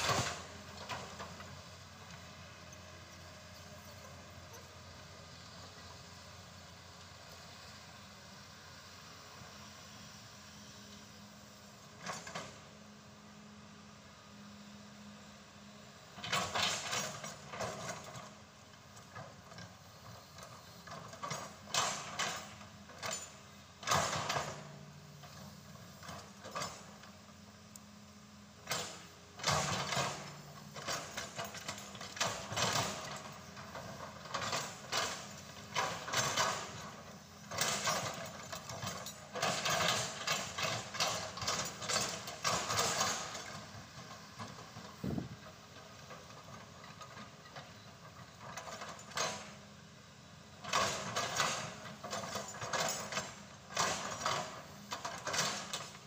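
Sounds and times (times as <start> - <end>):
metallic clanking and scraping: 28.6 - 45.4.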